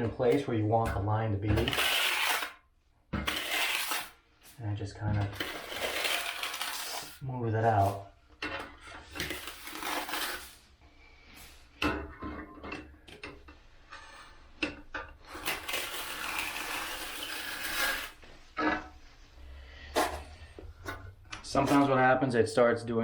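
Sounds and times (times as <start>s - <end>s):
trowels scraping wet mortar: 1.4s - 2.6s, 3.2s - 4.2s, 5.2s - 8.0s, 8.8s - 10.6s, 15.2s - 18.2s.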